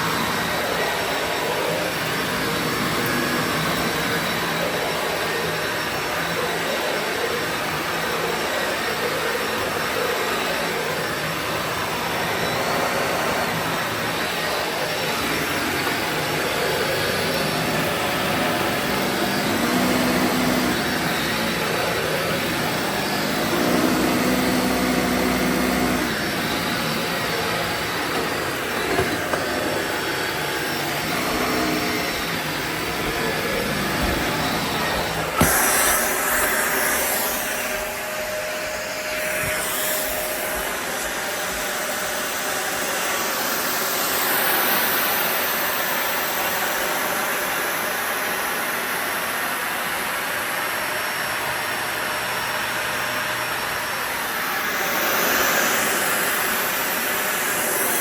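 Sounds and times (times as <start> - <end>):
vacuum cleaner whirring on carpet: 0.0 - 58.0.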